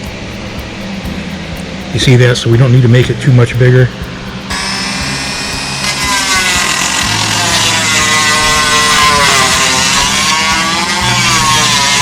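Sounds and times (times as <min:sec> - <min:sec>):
rotary tool grinding: 0:04.4 - 0:12.0.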